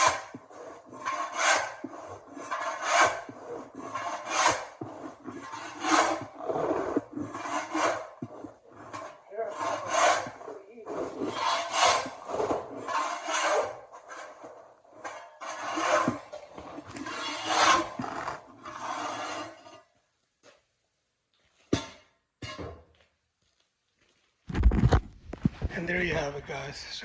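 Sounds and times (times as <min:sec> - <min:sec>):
tool scraping under carpet: 0:00.0 - 0:20.6.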